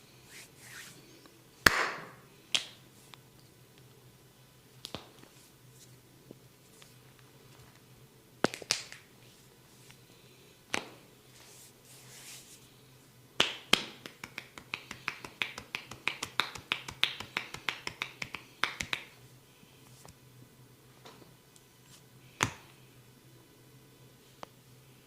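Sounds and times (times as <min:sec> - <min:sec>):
hands tapping a head: 0:13.4 - 0:19.1.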